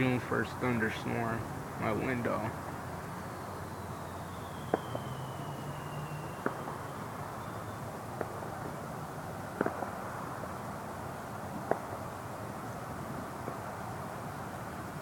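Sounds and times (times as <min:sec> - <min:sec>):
steady background hum: 0:00.0 - 0:15.0
faint falling whistle: 0:03.3 - 0:07.9
distant fireworks bangs: 0:04.6 - 0:10.6, 0:11.6 - 0:12.1.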